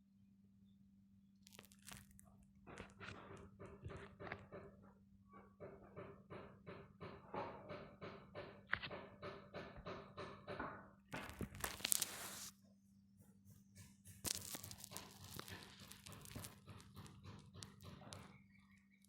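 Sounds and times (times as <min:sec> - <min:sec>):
paper crinkling and tearing: 0:01.5 - 0:02.2, 0:11.2 - 0:12.5, 0:14.2 - 0:16.6.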